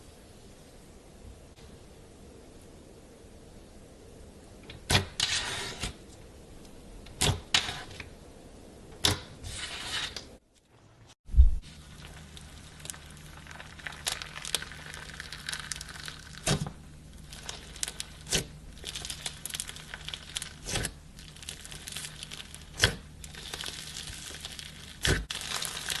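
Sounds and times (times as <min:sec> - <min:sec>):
slime squished by hand: 0:11.6 - 0:26.0
slime popping: 0:11.7 - 0:26.0.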